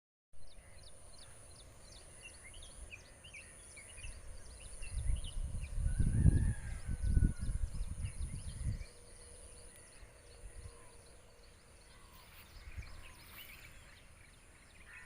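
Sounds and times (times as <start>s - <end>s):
small birds chirping: 0.4s - 15.0s
high-pitched whine: 0.6s - 15.0s
low gusty rumble: 4.1s - 14.8s.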